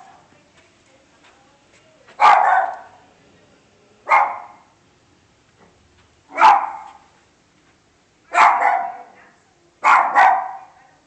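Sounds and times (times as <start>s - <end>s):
dog barking: 2.2s - 3.0s, 4.1s - 4.7s, 6.3s - 7.0s, 8.3s - 9.2s, 9.8s - 10.8s.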